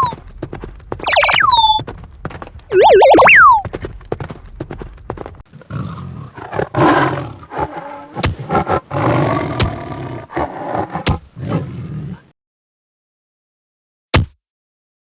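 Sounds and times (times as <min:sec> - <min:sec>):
cartoon whistle sliding in pitch: 0:01.1 - 0:01.8, 0:02.7 - 0:03.6
rough animal roars: 0:05.5 - 0:12.3.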